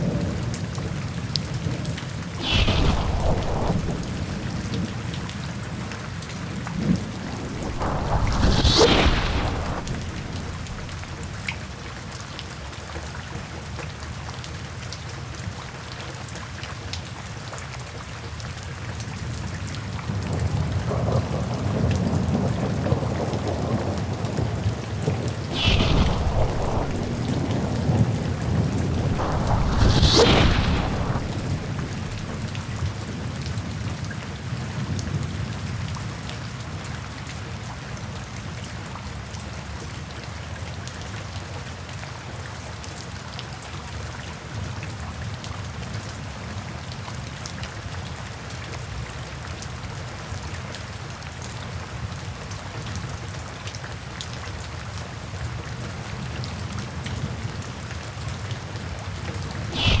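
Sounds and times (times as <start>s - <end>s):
heavy rain: 0.0s - 60.0s
low thunder rumble: 1.5s - 12.2s, 20.4s - 35.5s, 59.7s - 60.0s
thunderclap: 1.6s - 12.2s, 20.7s - 34.1s, 59.7s - 60.0s.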